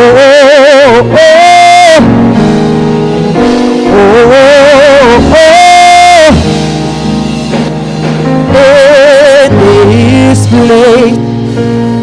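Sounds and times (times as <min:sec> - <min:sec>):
person singing with vibrato: 0:00.0 - 0:02.4, 0:03.6 - 0:06.5, 0:08.5 - 0:11.3.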